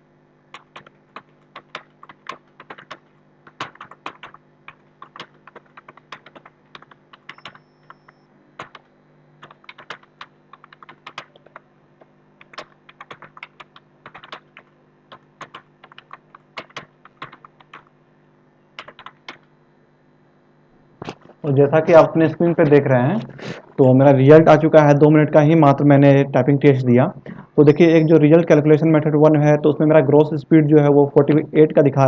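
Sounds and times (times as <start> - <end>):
faint steady hum: 0.0 - 32.0
keyboard typing clicks: 0.5 - 17.9, 18.8 - 19.5.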